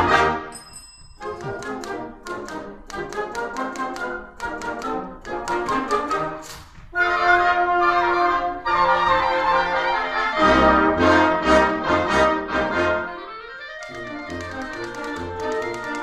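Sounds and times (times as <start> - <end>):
orchestral music with brass: 0.0 - 0.6, 1.2 - 16.0
typewriter-like clicks: 13.8 - 16.0.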